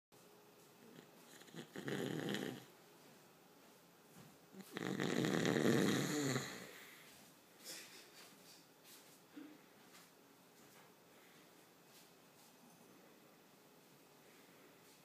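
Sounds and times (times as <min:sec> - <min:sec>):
person snoring: 0:00.9 - 0:02.7, 0:04.6 - 0:07.0.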